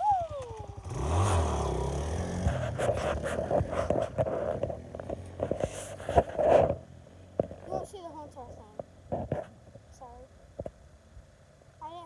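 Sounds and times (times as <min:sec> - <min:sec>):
atv engine revving: 0:00.0 - 0:09.6
clattering and scraping: 0:02.3 - 0:09.6.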